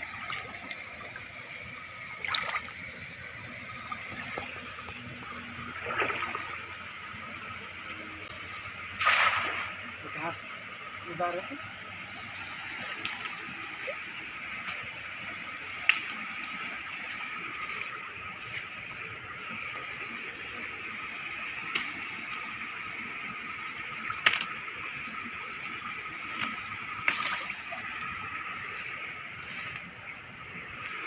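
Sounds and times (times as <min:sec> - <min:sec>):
sharp water splashes: 0:02.1 - 0:02.9, 0:05.7 - 0:06.7, 0:08.9 - 0:10.2, 0:26.3 - 0:28.2.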